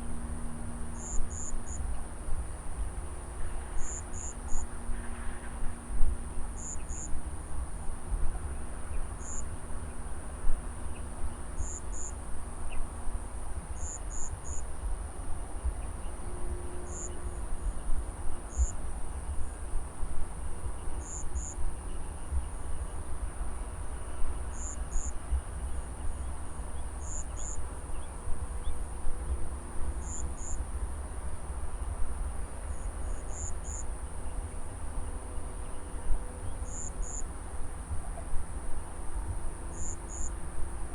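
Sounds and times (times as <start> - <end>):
insect high continuous trill: 0.1 - 40.9
insect paired chirps: 1.0 - 1.8, 11.6 - 12.1.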